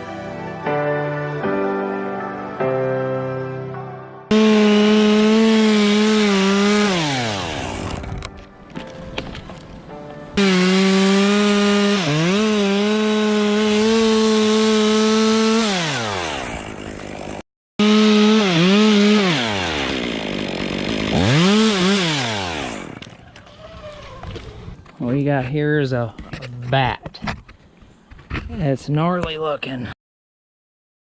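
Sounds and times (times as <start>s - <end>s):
chainsaw cutting wood: 4.3s - 9.4s, 10.4s - 23.2s.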